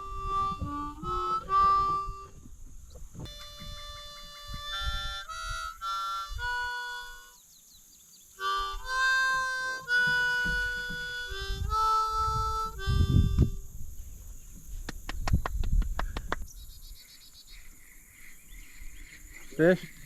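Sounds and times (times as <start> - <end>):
harmonica chords: 0.0 - 2.5, 3.2 - 7.4, 8.4 - 13.8
low rumbling thumps: 9.2 - 16.5.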